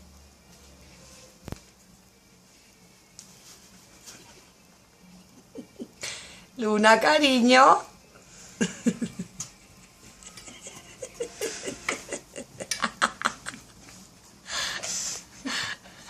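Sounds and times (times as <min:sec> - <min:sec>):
person laughing softly: 0:08.6 - 0:14.1.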